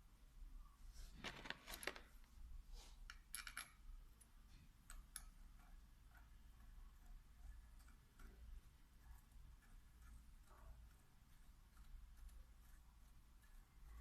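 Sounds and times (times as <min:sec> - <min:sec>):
small metal parts clinking: 0:03.1 - 0:03.8.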